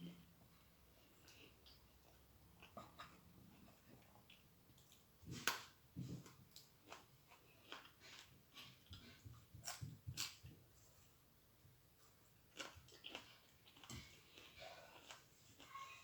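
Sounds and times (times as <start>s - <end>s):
chewing clicks and wet smacks: 1.2s - 10.5s, 12.5s - 15.4s.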